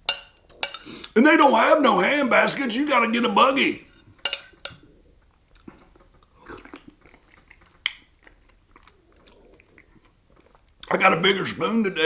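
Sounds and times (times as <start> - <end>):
spoon clicking against container: 0.0 - 0.8, 4.3 - 4.8
man chewing: 0.0 - 1.2, 3.9 - 11.0.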